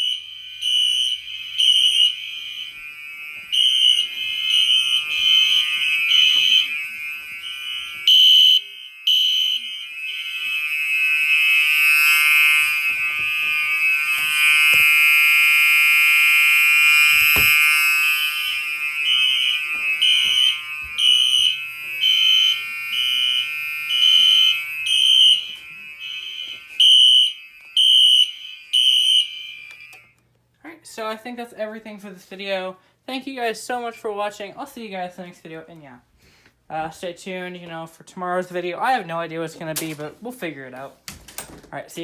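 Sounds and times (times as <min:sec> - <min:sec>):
fire alarm horns: 0:00.0 - 0:30.2.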